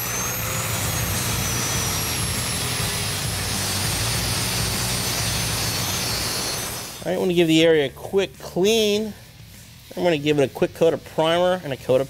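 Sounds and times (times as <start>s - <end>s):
power grinder grinding metal: 0.0s - 7.4s.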